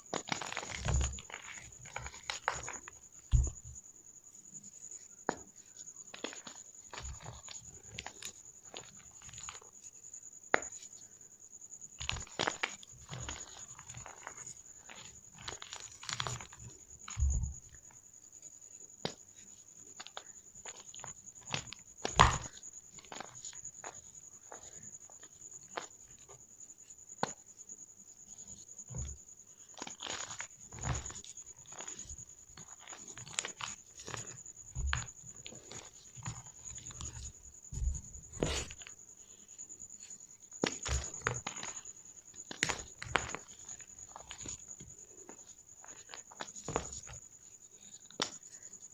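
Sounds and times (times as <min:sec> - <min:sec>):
chalk balls crunching: 0:28.4 - 0:39.0, 0:40.6 - 0:47.2.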